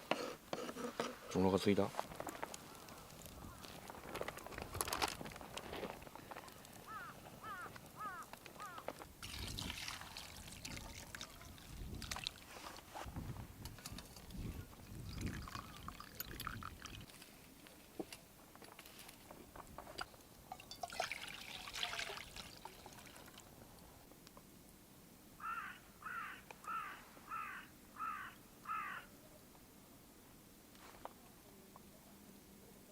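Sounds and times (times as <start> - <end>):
water trickling and pouring: 9.2 - 12.5, 14.7 - 17.1, 20.5 - 23.5.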